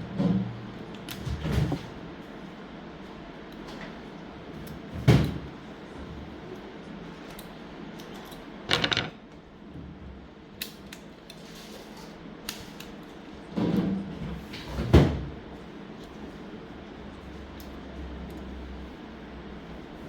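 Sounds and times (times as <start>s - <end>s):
clattering rattle: 8.7s - 9.2s.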